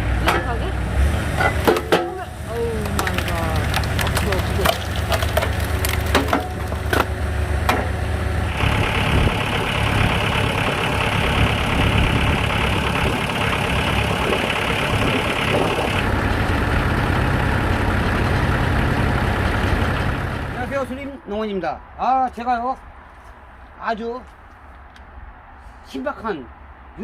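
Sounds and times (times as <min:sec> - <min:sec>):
log splitter engine running: 0:00.0 - 0:21.1.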